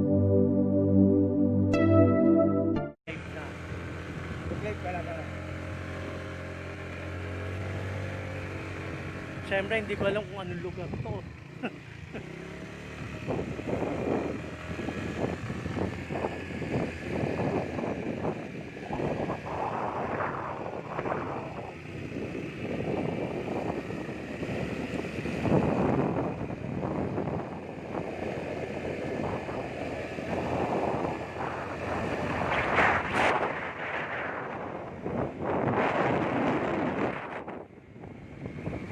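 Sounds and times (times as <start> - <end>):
moving vehicle running noise: 3.1 - 38.9
wind buffeting microphone: 13.0 - 38.9.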